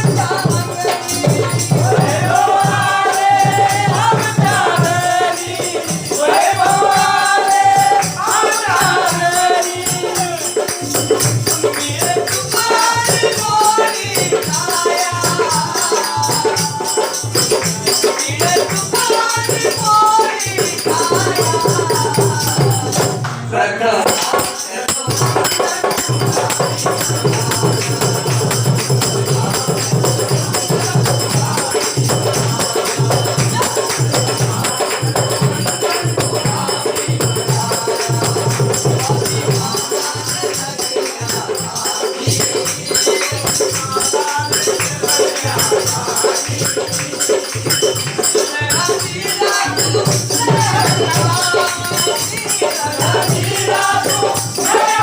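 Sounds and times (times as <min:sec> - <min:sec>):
group singing devotional song: 0:00.0 - 0:55.0
tambourine-like jingling rattle: 0:24.2 - 0:55.0.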